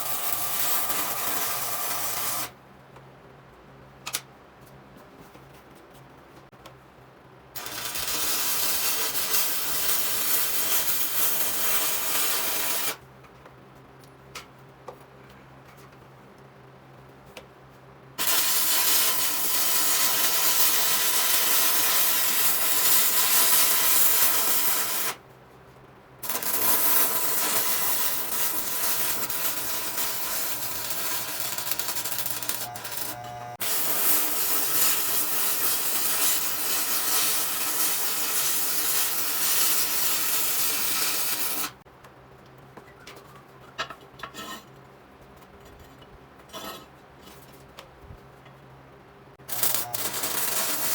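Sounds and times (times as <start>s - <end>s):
arc welding crackling hiss: 0.0s - 2.5s, 7.6s - 13.0s, 18.2s - 25.2s, 26.2s - 41.8s, 49.4s - 50.9s.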